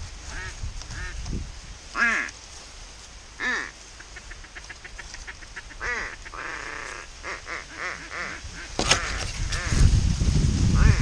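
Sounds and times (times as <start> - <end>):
duck quacking: 3.4 - 9.8.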